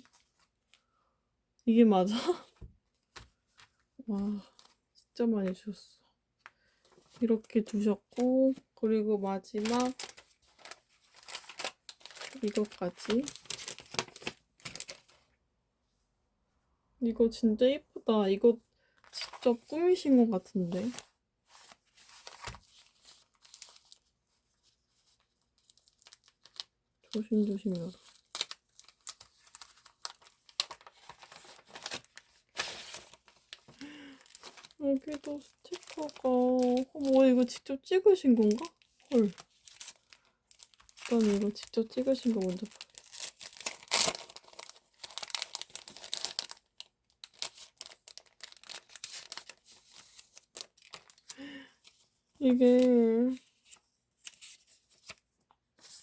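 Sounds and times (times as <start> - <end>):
packaging crinkling and rustling: 2.6 - 4.8, 9.4 - 15.3, 20.7 - 56.0.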